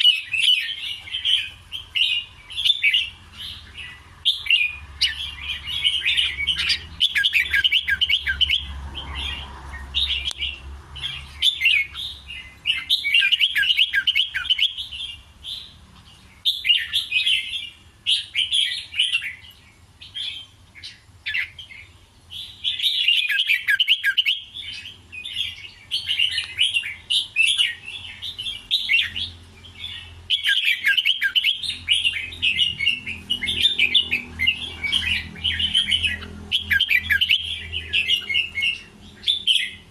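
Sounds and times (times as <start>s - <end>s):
bird warbling song: 0.0s - 39.9s.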